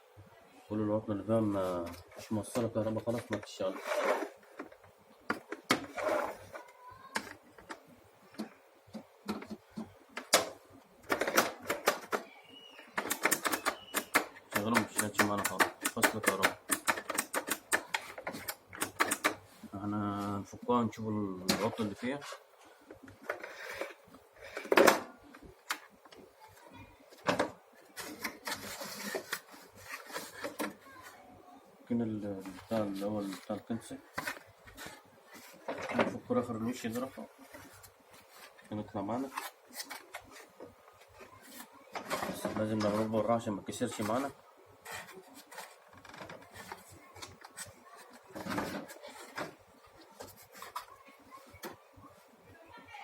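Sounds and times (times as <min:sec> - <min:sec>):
plastic clicks and knocks: 0:04.5 - 0:12.3, 0:12.9 - 0:19.4.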